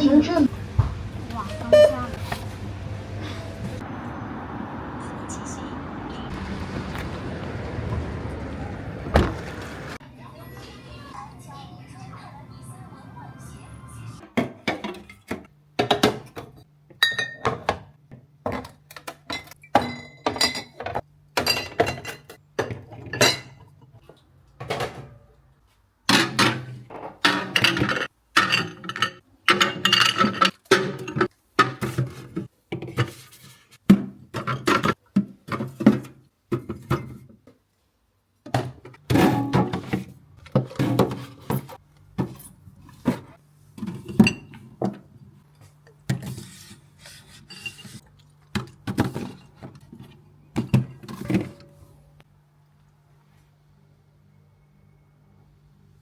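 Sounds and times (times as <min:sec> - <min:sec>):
dishes and utensils clinking: 0:17.0 - 0:17.8, 0:19.0 - 0:23.8, 0:26.1 - 0:33.1, 0:43.8 - 0:45.0, 0:47.1 - 0:51.9.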